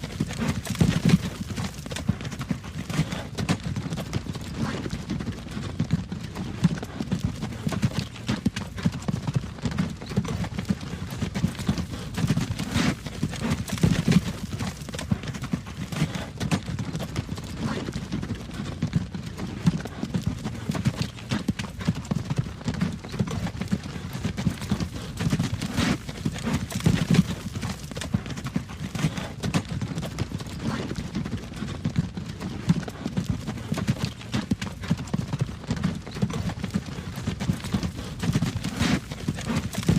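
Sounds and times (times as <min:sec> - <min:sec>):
horse hooves clip-clopping: 0:00.0 - 0:39.9.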